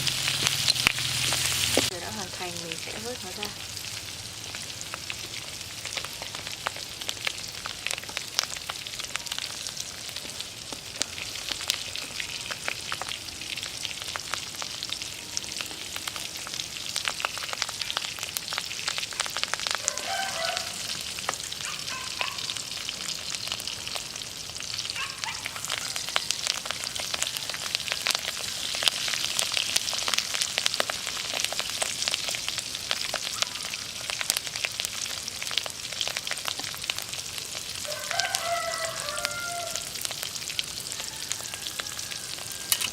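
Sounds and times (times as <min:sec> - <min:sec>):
food deep-frying in oil: 0:00.0 - 0:42.9.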